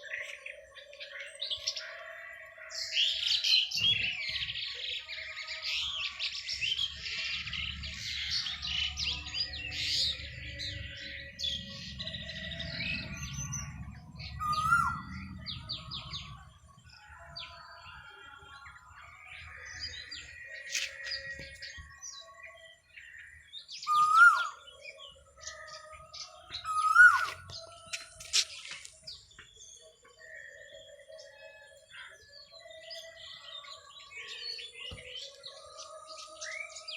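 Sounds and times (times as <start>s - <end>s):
bird calling loudly: 14.4s - 15.2s, 23.8s - 24.6s, 26.7s - 27.6s.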